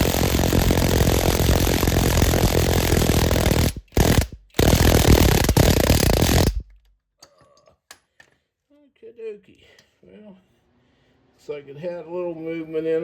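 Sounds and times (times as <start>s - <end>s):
impact wrench hammering: 0.0s - 6.7s.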